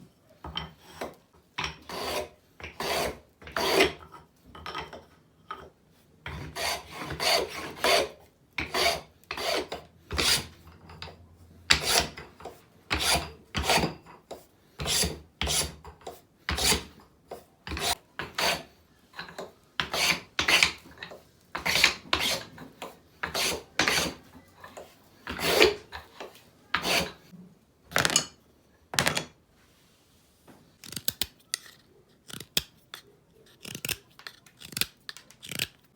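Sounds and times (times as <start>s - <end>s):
hand tool scraping wood: 0.8s - 4.0s, 6.3s - 10.6s, 11.7s - 27.3s, 30.9s - 35.8s.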